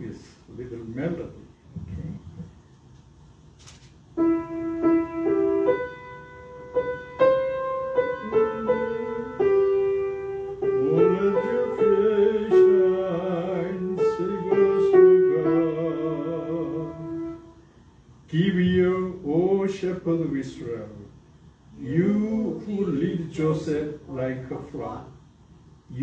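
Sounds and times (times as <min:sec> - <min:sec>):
piano playing hymn melody: 0:04.2 - 0:17.7
person singing with vibrato: 0:07.0 - 0:17.6.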